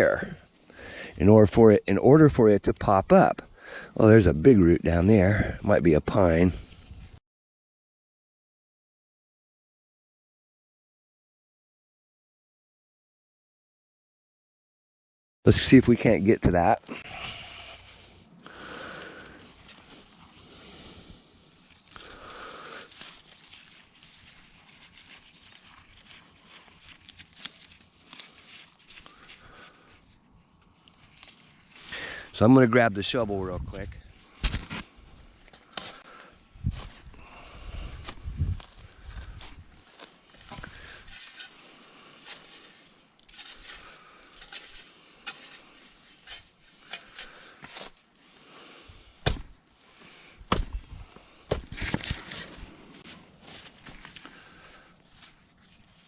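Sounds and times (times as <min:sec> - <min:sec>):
hands digging through soil: 0:16.2 - 0:32.2, 0:34.2 - 0:49.1
shovel knocks and crunches: 0:34.4 - 0:34.8, 0:49.2 - 0:49.6, 0:50.5 - 0:50.8, 0:51.5 - 0:52.7
footsteps: 0:50.5 - 0:55.8.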